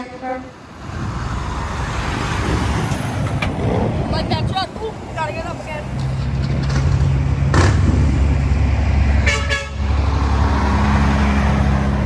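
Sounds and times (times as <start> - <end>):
diesel truck engine rumbling: 0.0 - 12.0
truck horn blast: 9.2 - 10.1.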